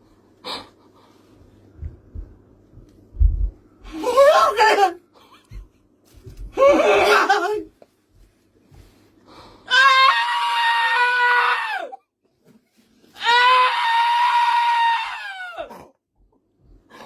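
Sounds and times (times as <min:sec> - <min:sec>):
high-pitched screaming cries: 0:09.7 - 0:12.0, 0:13.2 - 0:15.7.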